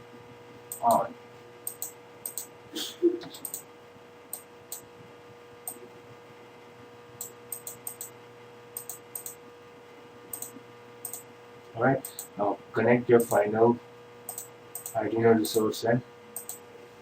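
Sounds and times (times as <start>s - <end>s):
faint electrical hum: 0.0s - 17.0s
computer mouse clicks: 1.6s - 2.5s, 3.4s - 3.7s, 7.2s - 8.1s, 8.8s - 9.4s, 10.3s - 11.3s, 14.3s - 15.0s, 16.4s - 16.6s.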